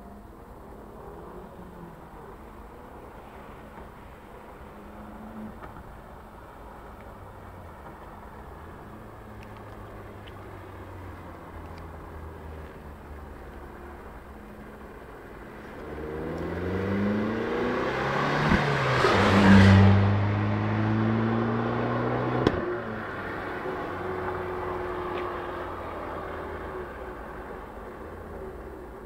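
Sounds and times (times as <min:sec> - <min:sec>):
car engine revving: 0:15.6 - 0:27.8.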